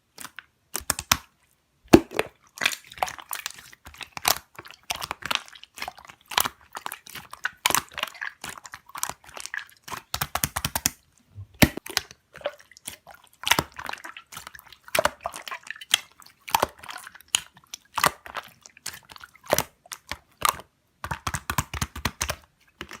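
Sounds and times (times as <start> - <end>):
slime crackling and popping: 1.9 - 11.0.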